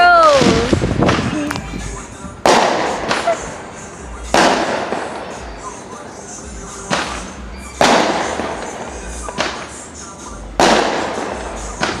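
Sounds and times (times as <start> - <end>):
fireworks bangs: 0.0 - 12.0
rumble after fireworks: 0.0 - 12.0.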